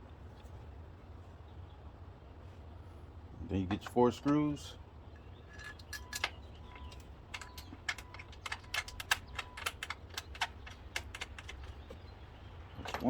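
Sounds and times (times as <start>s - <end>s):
screws clicking and tapping: 5.6s - 12.0s.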